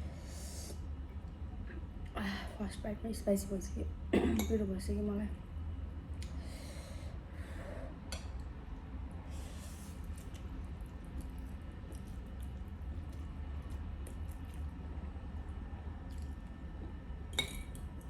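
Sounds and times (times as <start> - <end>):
person chewing and slurping noodles: 9.3 - 15.0, 16.0 - 17.0.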